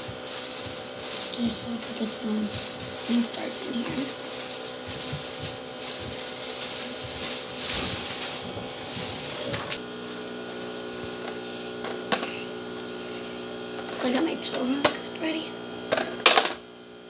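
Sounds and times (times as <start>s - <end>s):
hissy rustle: 0.0s - 11.5s
electric blower fan humming: 0.0s - 17.0s.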